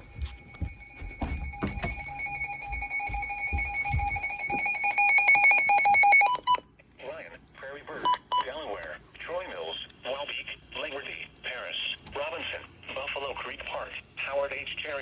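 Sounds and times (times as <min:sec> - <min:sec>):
electronic emergency alert tones: 0:00.0 - 0:06.6.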